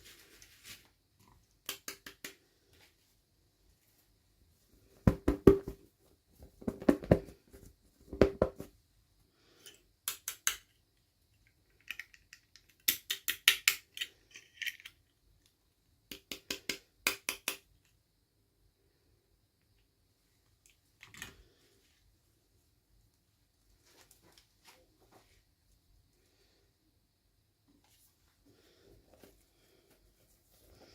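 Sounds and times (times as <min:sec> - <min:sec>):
toy pieces clicking and tapping: 0:10.0 - 0:10.8, 0:11.4 - 0:15.1, 0:16.1 - 0:17.7.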